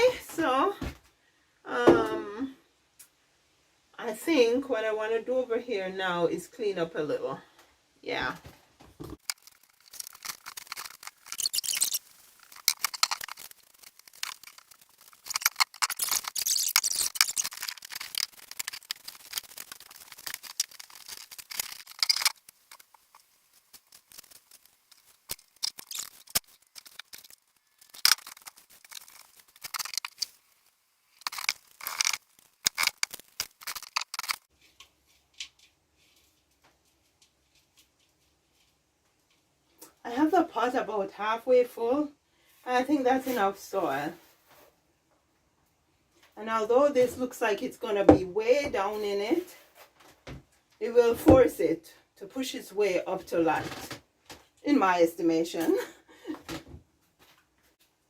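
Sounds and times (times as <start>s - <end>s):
potting soil scraping and rustling: 9.1s - 39.0s, 42.5s - 44.8s, 46.4s - 50.1s.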